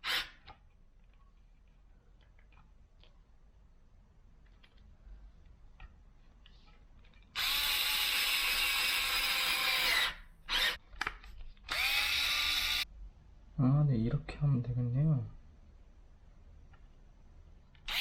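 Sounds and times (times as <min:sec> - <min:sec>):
electric drill whining: 0:07.4 - 0:10.8, 0:11.7 - 0:12.8.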